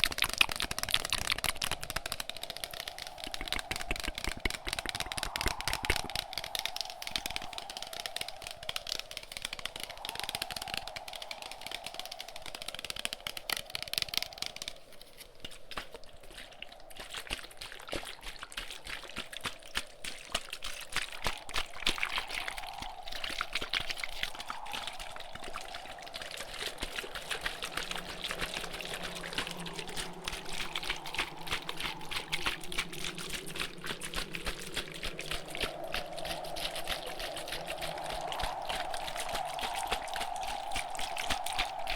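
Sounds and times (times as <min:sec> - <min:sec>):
fast close tapping clicks: 0:00.0 - 0:16.0
gusting wind: 0:00.0 - 0:41.9.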